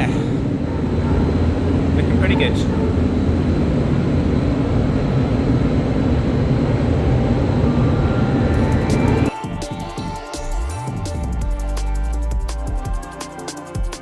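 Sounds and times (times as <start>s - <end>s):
fans rushing air: 0.0s - 13.7s
music: 8.5s - 14.0s.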